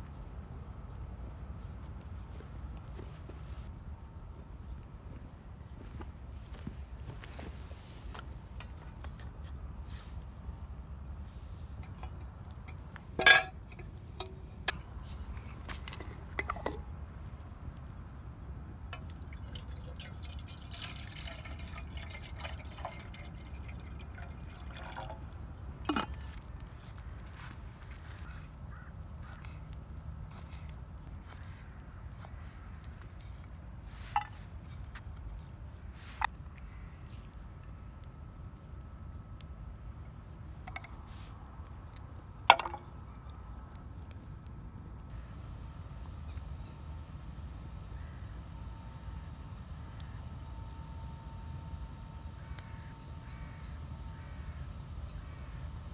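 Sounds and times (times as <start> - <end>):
cookware clinking and knocking: 13.2 - 13.6
liquid pouring and dripping: 19.0 - 26.5, 45.1 - 55.9.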